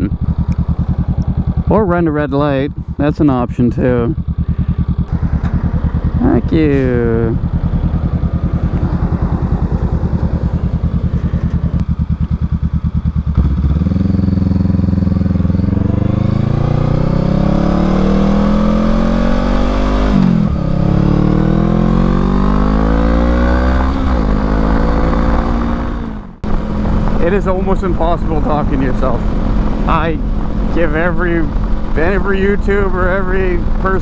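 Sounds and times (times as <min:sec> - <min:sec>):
motorcycle engine idling: 0:00.0 - 0:23.0, 0:26.4 - 0:34.0
motorcycle accelerating: 0:00.0 - 0:34.0.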